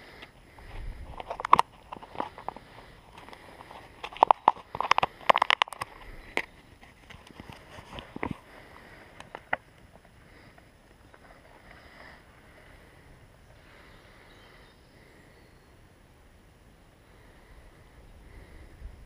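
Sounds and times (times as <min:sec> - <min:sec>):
faint outdoor background: 0:00.0 - 0:19.0
handling clicks and knocks: 0:01.2 - 0:08.4.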